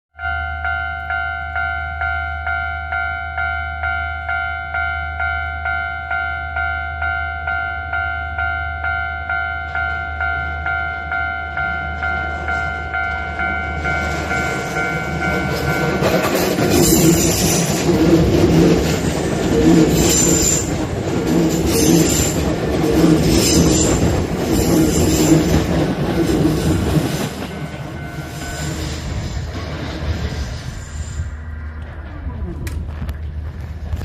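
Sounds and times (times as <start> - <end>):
level-crossing bell ringing: 0.2 - 17.8, 26.7 - 28.9
train running past: 0.2 - 34.0
wheels clacking over rail joints: 11.6 - 30.6.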